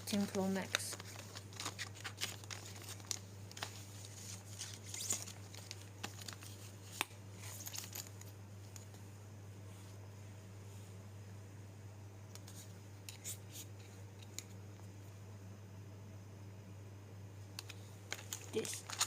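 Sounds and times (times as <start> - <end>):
plastic wrapping crinkling: 0.0 - 8.1, 17.6 - 19.0
steady low hum: 0.0 - 19.0.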